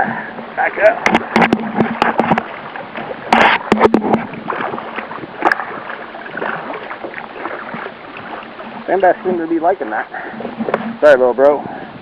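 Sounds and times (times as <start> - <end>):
strong wind: 0.0 - 12.0
water splashing against kayak: 0.0 - 12.0
knocks and rattles: 1.0 - 2.5.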